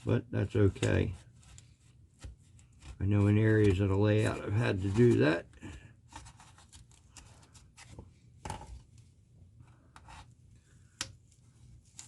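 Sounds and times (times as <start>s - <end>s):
hand tool scraping plaster: 2.2s - 7.3s.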